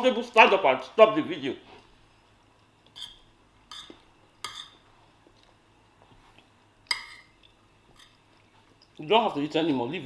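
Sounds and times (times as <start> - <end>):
cutlery clinking on a plate: 6.9 - 7.3.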